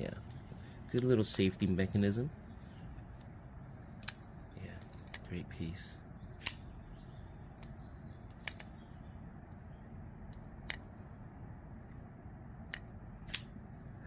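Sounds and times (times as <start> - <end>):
sharp small metallic clicks: 4.0 - 4.2, 6.4 - 6.7, 7.6 - 8.8, 10.3 - 10.9, 12.6 - 13.6.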